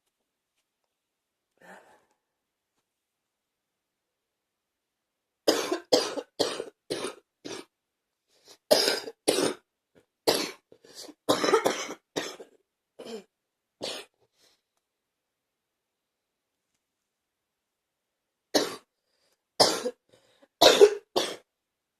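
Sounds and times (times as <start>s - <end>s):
person coughing: 5.5s - 7.7s, 8.7s - 9.6s, 10.3s - 14.1s, 19.6s - 20.0s, 20.6s - 21.5s.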